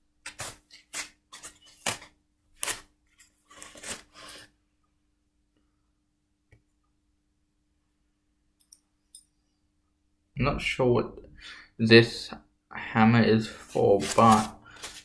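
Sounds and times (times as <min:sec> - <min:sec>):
foam packaging rubbing and squeaking: 0:02.6 - 0:04.4, 0:13.7 - 0:15.0.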